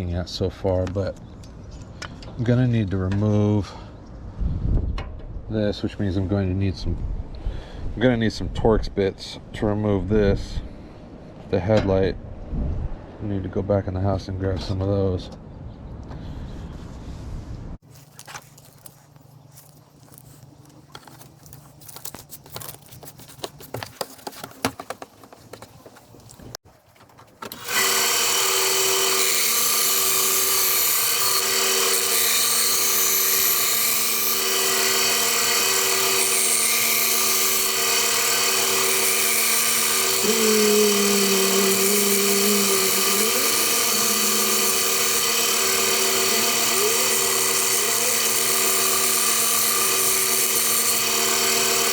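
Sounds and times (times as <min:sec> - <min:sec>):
handling clicks and knocks: 0:18.1 - 0:27.6
small power tool running: 0:27.5 - 0:51.9.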